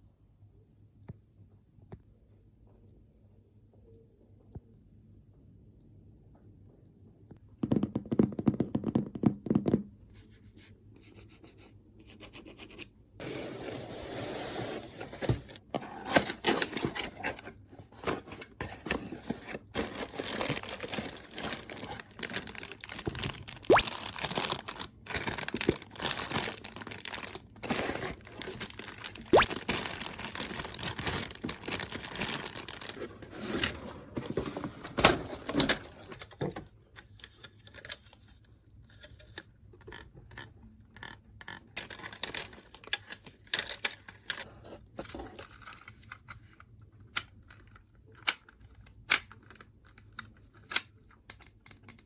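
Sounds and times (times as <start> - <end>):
hands handling plastic packaging: 13.2 - 38.2, 41.8 - 52.0.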